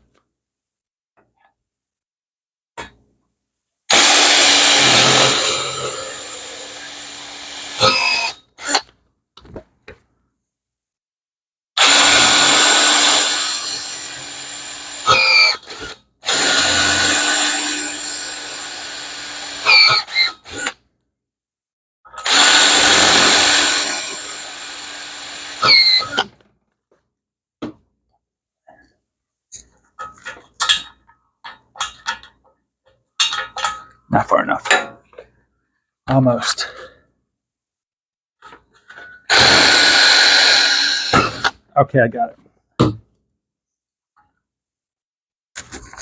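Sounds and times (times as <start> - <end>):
drill squeal: 3.9 - 8.8, 11.8 - 20.7, 22.2 - 26.2, 39.3 - 41.5
power drill boring into metal: 3.9 - 8.8, 11.8 - 20.8, 22.2 - 26.3, 39.2 - 41.6.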